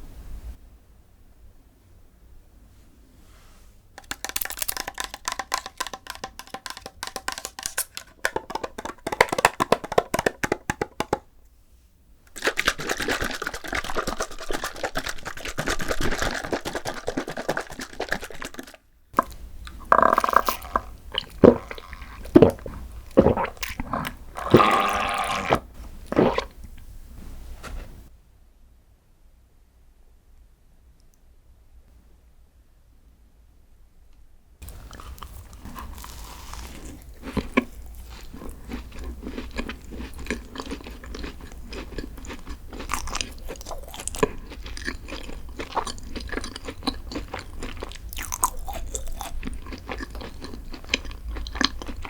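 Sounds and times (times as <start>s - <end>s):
crunchy chewing: 4.0s - 10.5s, 12.3s - 26.6s, 34.6s - 52.0s.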